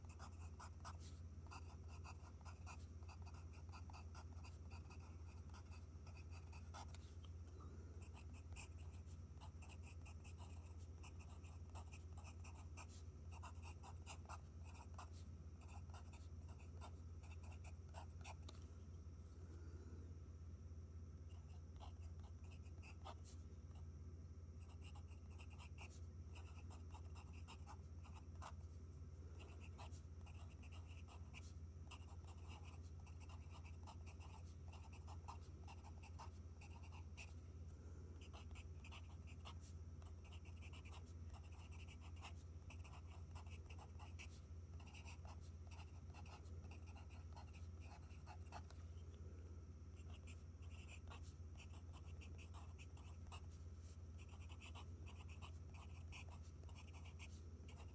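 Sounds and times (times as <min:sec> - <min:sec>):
pencil writing on paper: 0:00.0 - 0:07.1, 0:08.0 - 0:18.5, 0:24.6 - 0:28.6, 0:29.4 - 0:37.3, 0:38.2 - 0:48.8, 0:50.0 - 0:57.9
low steady hum: 0:00.0 - 0:57.9.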